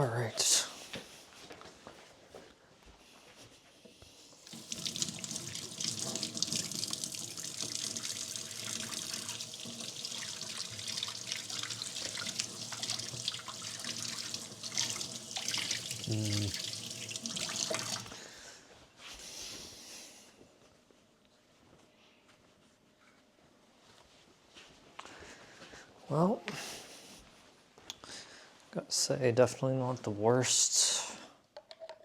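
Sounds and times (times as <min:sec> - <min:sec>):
water tap running into sink: 0:04.4 - 0:18.2.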